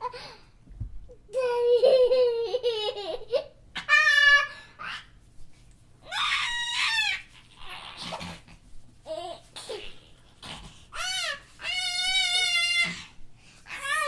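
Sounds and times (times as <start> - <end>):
child laughing and squealing: 1.5 - 5.1, 6.0 - 8.0, 10.9 - 14.0.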